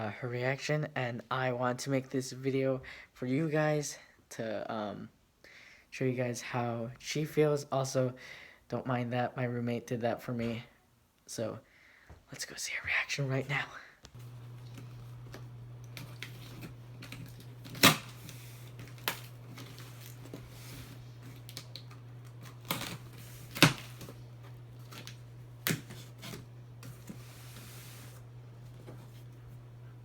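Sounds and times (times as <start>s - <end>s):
steady low hum: 14.1s - 30.0s.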